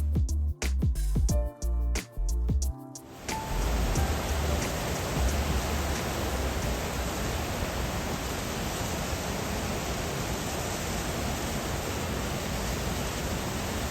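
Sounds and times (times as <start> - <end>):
rushing water: 3.1 - 13.9.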